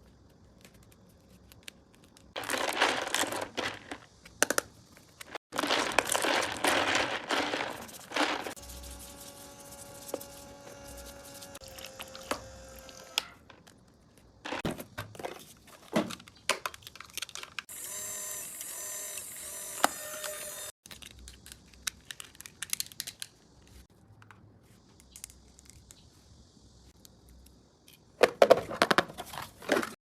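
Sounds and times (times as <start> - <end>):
packaging crinkling and tearing: 0.6 - 4.1, 5.3 - 9.2.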